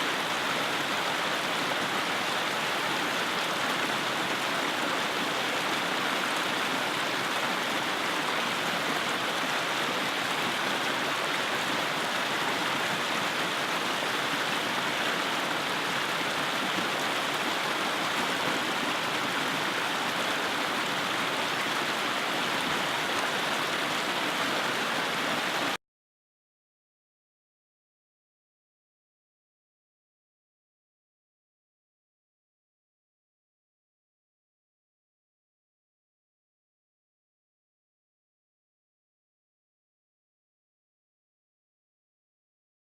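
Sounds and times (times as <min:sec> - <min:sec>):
creek rushing over rocks: 0:00.0 - 0:25.8.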